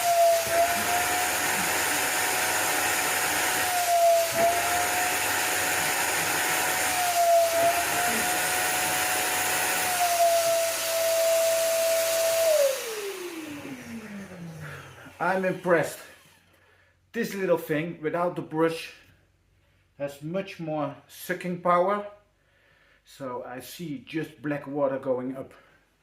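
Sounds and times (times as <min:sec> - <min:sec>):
wet vacuum cleaner whining: 0:00.0 - 0:16.5.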